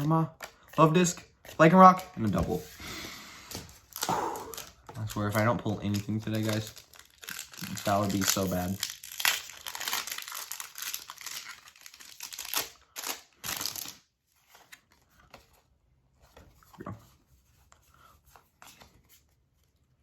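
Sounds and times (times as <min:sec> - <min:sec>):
foil wrapper crinkling and tearing: 0:03.8 - 0:14.1.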